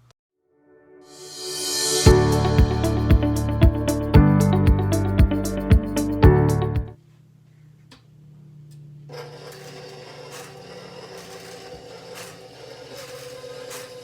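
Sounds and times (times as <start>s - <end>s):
stand mixer motor whine: 9.1s - 14.0s.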